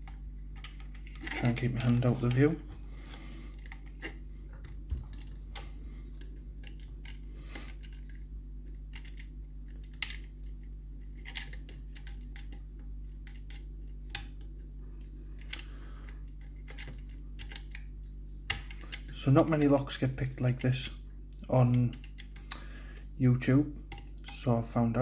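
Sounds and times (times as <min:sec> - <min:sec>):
steady low hum: 0:00.0 - 0:25.0
lock picks clicking in a lock: 0:16.4 - 0:17.9.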